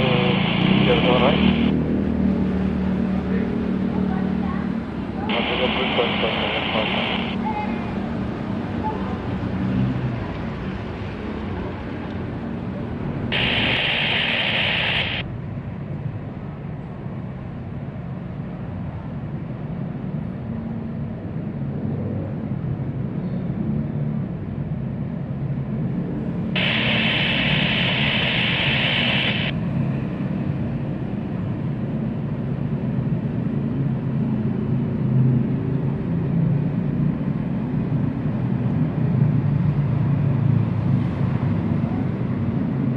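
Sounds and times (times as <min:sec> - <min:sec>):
jet engines rumbling: 0:00.0 - 0:01.8, 0:05.2 - 0:07.5, 0:10.9 - 0:15.3, 0:26.6 - 0:29.6
radio squelch hiss: 0:00.0 - 0:01.8, 0:05.3 - 0:07.5, 0:13.3 - 0:15.2, 0:26.6 - 0:29.6.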